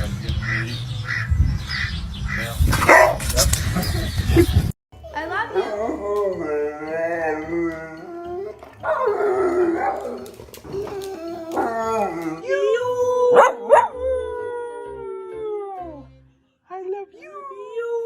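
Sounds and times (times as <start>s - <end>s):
dog howling: 5.7s - 16.0s.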